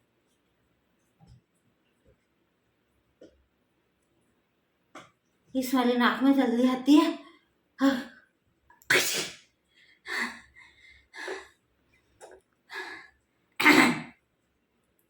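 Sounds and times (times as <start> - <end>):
woman sneezing: 8.9 - 9.4, 13.6 - 14.2.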